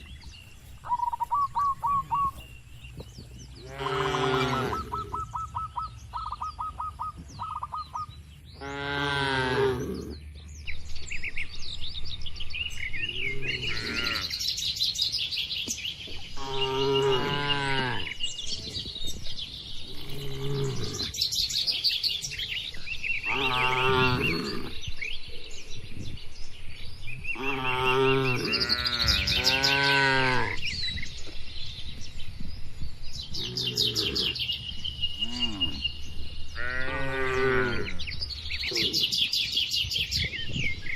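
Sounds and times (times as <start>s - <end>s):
small birds chirping: 0.0s - 40.9s
cattle mooing: 3.6s - 5.1s, 23.3s - 24.8s.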